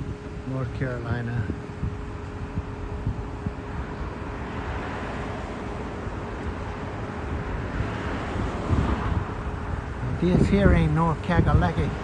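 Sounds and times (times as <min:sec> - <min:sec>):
road traffic noise: 0:00.0 - 0:12.0
wind rumble on microphone: 0:00.0 - 0:12.0
passing vehicle hiss: 0:03.0 - 0:12.0.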